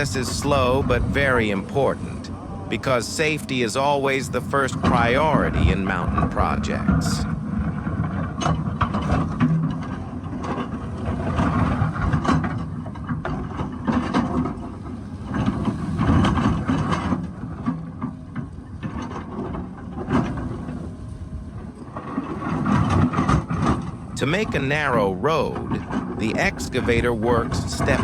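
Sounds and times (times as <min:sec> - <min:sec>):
excavator engine under load: 0:00.0 - 0:21.2.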